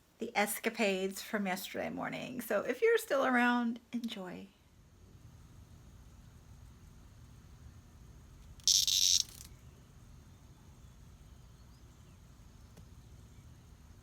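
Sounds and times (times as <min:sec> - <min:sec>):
short hissing buzz: 0:08.6 - 0:09.5.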